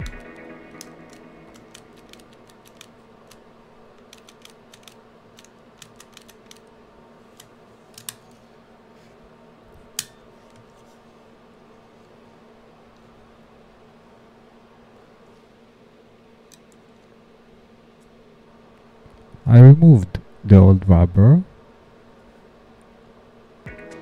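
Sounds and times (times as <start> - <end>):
faint steady hum: 0.0 - 24.0
small parts clicking: 0.8 - 3.4, 4.0 - 6.7.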